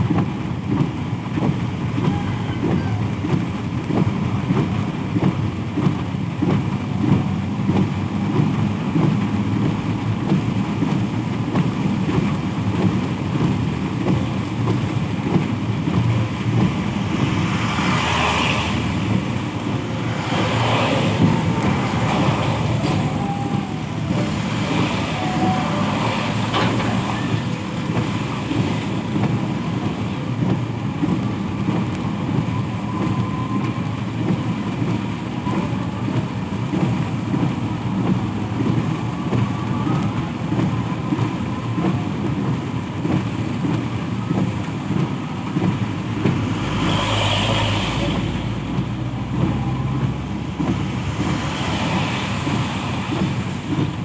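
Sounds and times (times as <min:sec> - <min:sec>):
heavy vehicle engine running: 0:00.0 - 0:54.0
road traffic: 0:00.0 - 0:54.0
deep rumble: 0:11.8 - 0:42.2.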